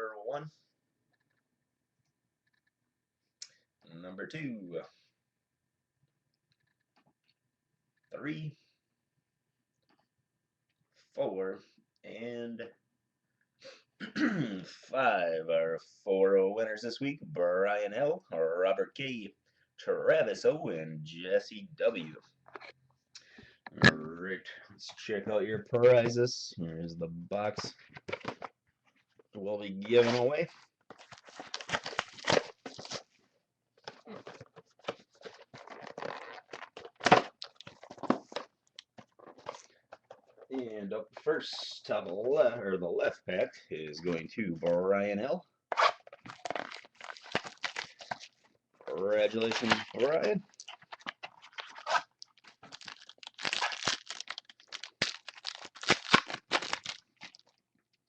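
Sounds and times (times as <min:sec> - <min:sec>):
cardboard and wrappers rustling: 0:29.8 - 0:33.2, 0:33.8 - 0:40.5, 0:45.8 - 0:57.6.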